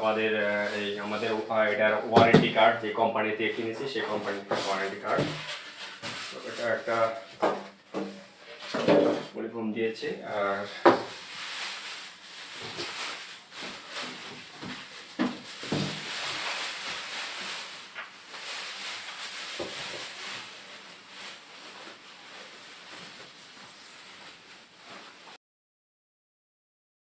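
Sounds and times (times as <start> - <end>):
foam and cardboard rustling: 3.6 - 9.3, 10.5 - 25.4.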